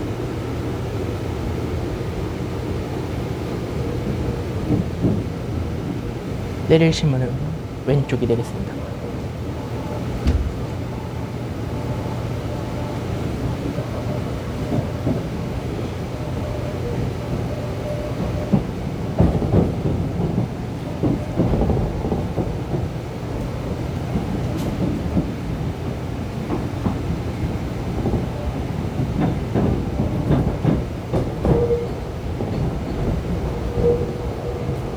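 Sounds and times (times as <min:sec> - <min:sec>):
train rumbling on track: 0:00.0 - 0:34.9
wheel clacks over rail joints: 0:18.4 - 0:34.9.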